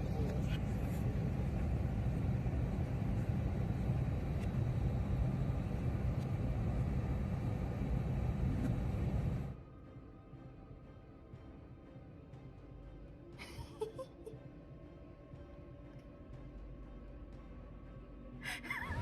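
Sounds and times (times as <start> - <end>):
low outdoor rumble: 0.0 - 9.7.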